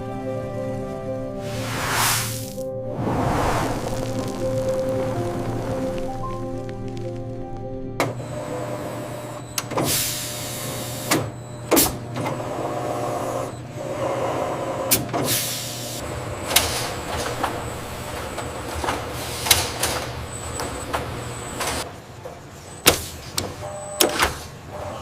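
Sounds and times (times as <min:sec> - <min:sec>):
factory machinery humming: 0:01.3 - 0:22.8
air hissing: 0:01.4 - 0:06.2.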